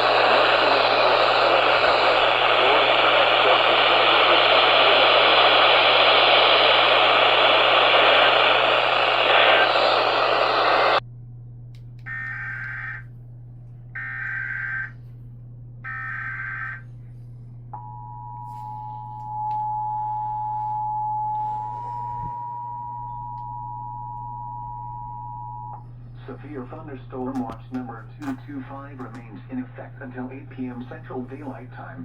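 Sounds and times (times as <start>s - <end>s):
loud hiss: 0.0s - 11.0s
buzzy data bursts: 12.1s - 13.0s, 14.0s - 14.9s, 15.9s - 16.8s.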